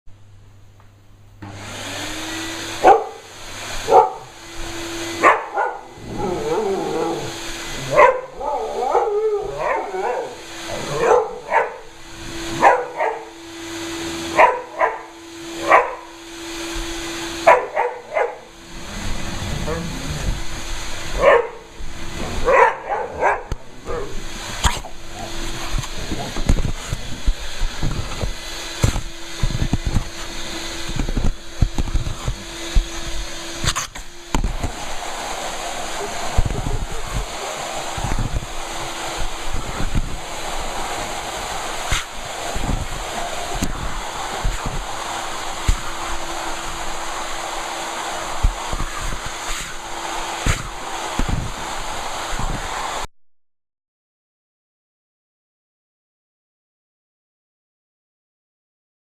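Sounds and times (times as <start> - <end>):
vacuum cleaner humming: 1.2 - 53.1
dog barking: 2.8 - 3.3, 3.9 - 4.3, 5.2 - 11.9, 12.6 - 13.4, 14.3 - 16.1, 17.4 - 18.5, 21.2 - 21.7, 22.4 - 24.2
dog making wavering drawn-out noises: 5.2 - 11.9, 19.3 - 20.5, 22.2 - 26.5.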